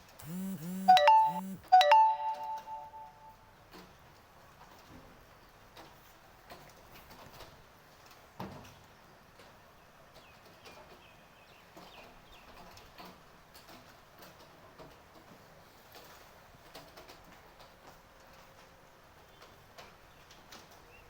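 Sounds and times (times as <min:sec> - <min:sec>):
faint high chirps: 0:00.2 - 0:03.4
light rain dripping: 0:03.4 - 0:21.0.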